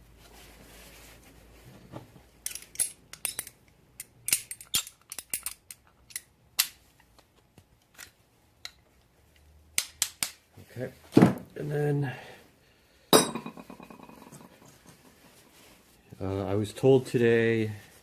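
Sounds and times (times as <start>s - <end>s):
metallic clicks and scrapes of pipe: 2.3s - 10.4s.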